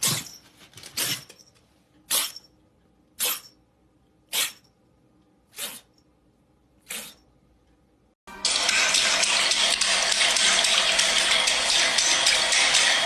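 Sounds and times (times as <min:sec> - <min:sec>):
pet sneezing bursts of breath: 0:04.3 - 0:04.7, 0:05.5 - 0:05.9, 0:06.8 - 0:07.2.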